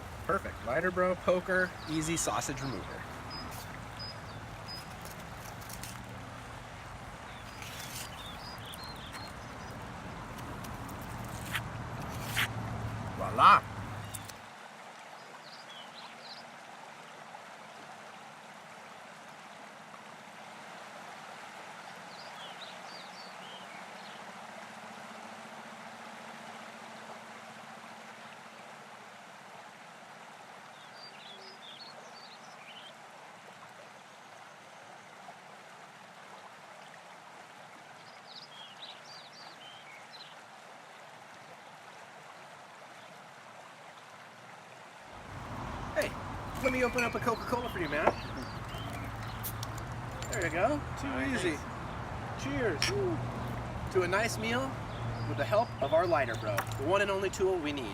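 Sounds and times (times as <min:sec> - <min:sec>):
rushing hiss of running water: 0:00.0 - 0:25.5.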